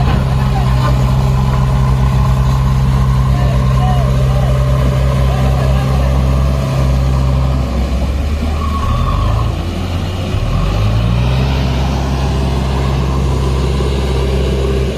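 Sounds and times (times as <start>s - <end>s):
diesel engine running: 0.0s - 14.9s.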